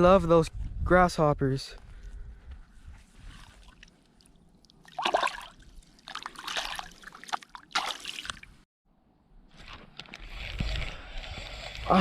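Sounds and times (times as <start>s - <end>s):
water splashing and sloshing: 3.0s - 8.7s.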